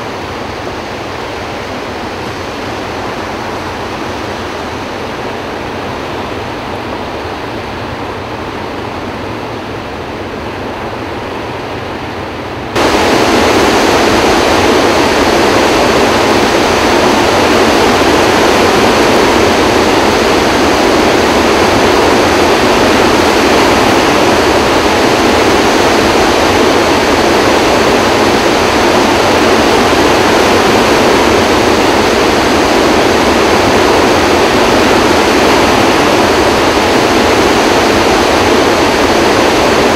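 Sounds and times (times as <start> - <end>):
water rushing through spillway: 12.8 - 39.9.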